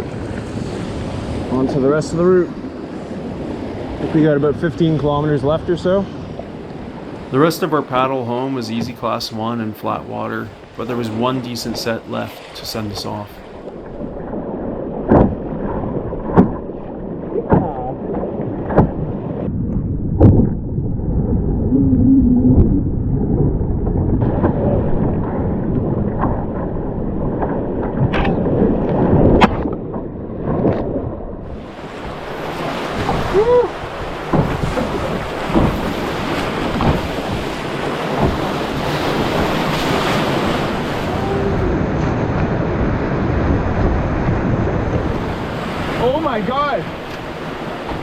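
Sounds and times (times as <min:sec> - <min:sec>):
wind buffeting microphone: 0:00.0 - 0:48.0
rushing whitewater: 0:07.1 - 0:13.6, 0:31.6 - 0:42.0, 0:44.8 - 0:48.0
sharp knocks: 0:15.1 - 0:15.4, 0:16.3 - 0:16.6, 0:34.3 - 0:37.6, 0:38.2 - 0:38.5.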